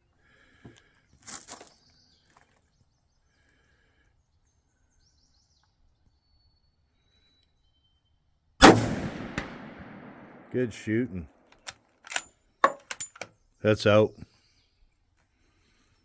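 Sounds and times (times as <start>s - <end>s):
faint bird chirps: 1.0s - 8.3s
rifle click: 11.6s - 13.3s
rifle scraping rattle: 11.6s - 13.3s.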